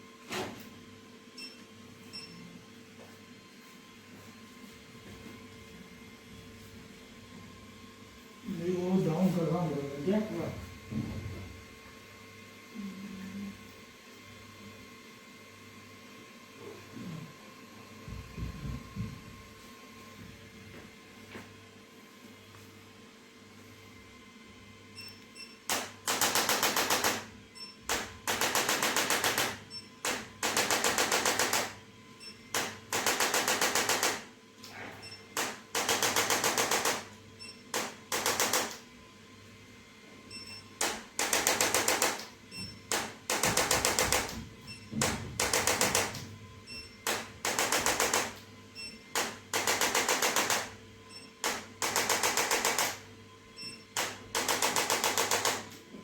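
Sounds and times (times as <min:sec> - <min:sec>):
electric massager rattling: 0:25.7 - 0:27.3, 0:27.9 - 0:31.8, 0:32.5 - 0:34.3, 0:35.4 - 0:37.1, 0:37.7 - 0:38.8, 0:40.8 - 0:46.3, 0:47.0 - 0:48.4, 0:49.1 - 0:50.8, 0:51.4 - 0:53.0, 0:54.0 - 0:55.8.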